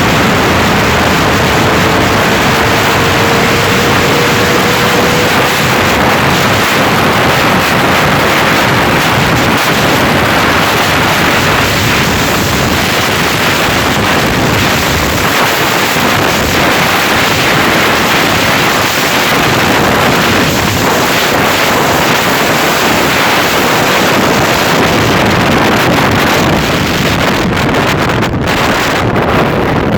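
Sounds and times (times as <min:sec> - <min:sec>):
motorcycle engine at speed: 0:00.0 - 0:29.9
wind buffeting on microphone: 0:00.0 - 0:29.9.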